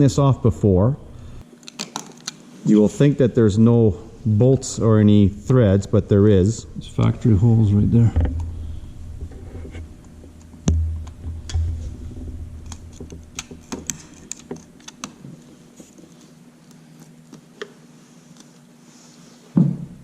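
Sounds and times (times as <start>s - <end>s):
low rumble: 5.5s - 13.7s.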